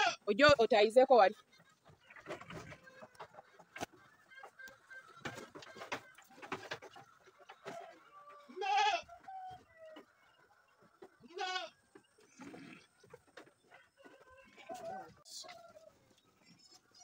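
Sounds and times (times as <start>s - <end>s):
goats bleating: 0.0s - 0.2s, 8.3s - 9.2s, 11.2s - 11.8s
faint animal sounds: 1.3s - 17.0s.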